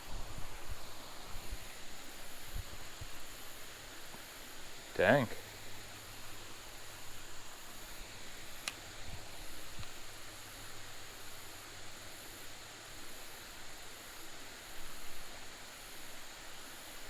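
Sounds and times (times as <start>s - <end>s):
small waterfall flowing into pool: 0.0s - 17.0s
faint click: 8.6s - 8.8s.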